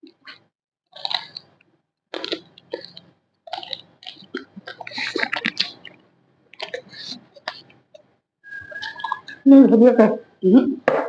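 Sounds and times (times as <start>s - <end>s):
person chewing crunchy snacks: 0.9s - 7.8s.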